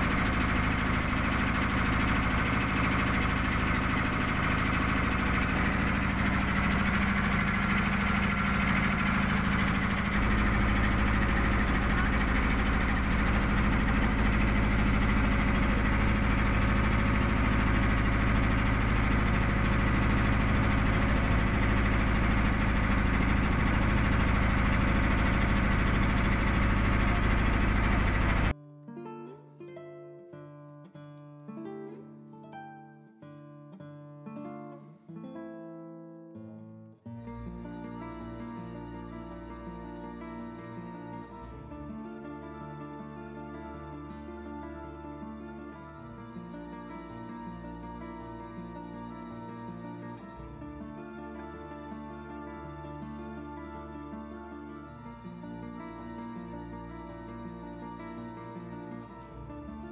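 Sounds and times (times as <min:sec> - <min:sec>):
boat engine running: 0:00.0 - 0:28.5.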